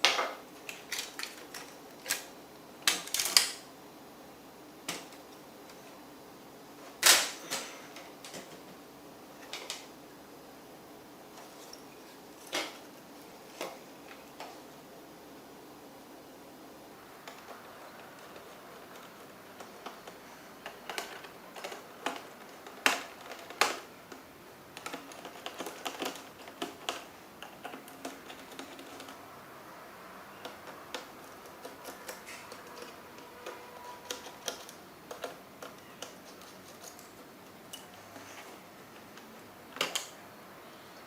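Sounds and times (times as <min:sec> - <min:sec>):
laptop parts clicking: 0:00.0 - 0:03.6, 0:17.2 - 0:29.2, 0:30.4 - 0:40.2.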